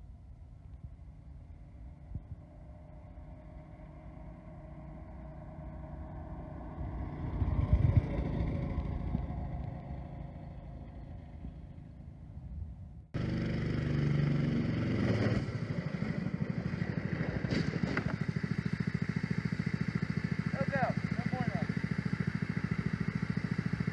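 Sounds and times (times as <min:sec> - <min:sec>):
small engine idling: 0:13.2 - 0:23.9.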